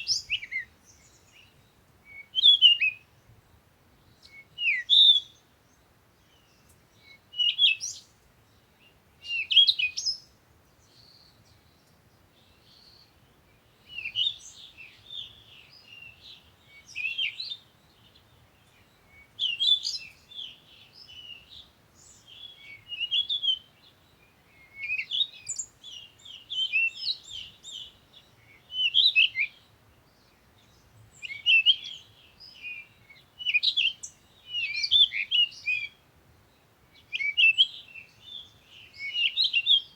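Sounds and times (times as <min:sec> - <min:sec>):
small songbirds chirping: 0:00.0 - 0:39.9.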